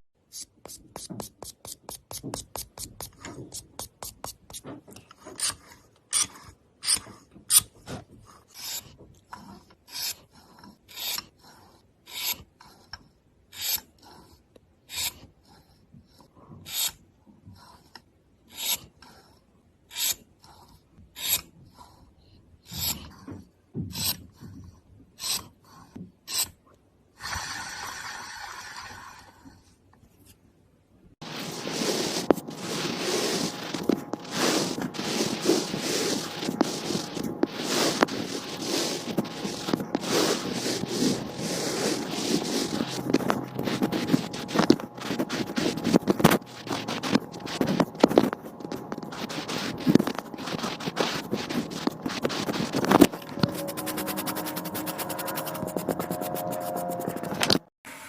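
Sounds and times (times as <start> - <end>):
rasping scraping strokes: 31.2 - 57.7.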